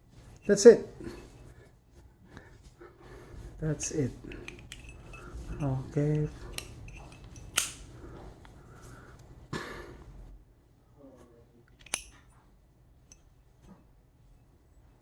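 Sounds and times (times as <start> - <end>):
lighter lid clicking: 6.5 - 7.8, 11.8 - 12.2.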